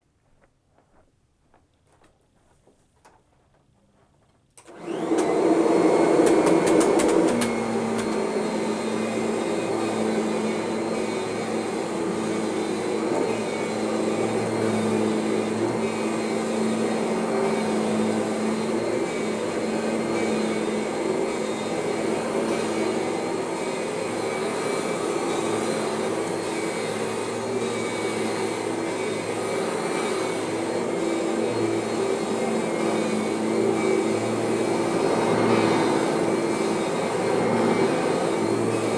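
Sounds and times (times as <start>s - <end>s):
vacuum cleaner humming: 4.6s - 38.9s.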